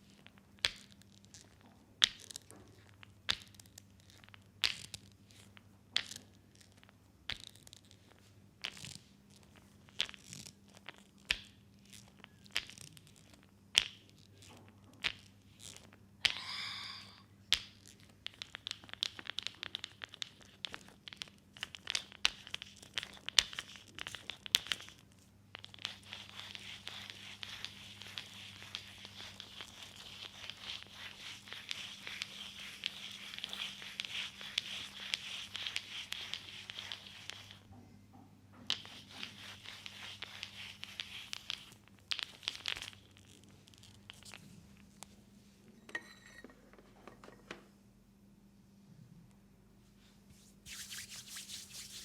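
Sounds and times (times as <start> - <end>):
wet clicking and rubbing: 17.6 - 37.6, 38.7 - 44.4, 50.7 - 52.0
hands slapping oiled skin: 50.7 - 52.0.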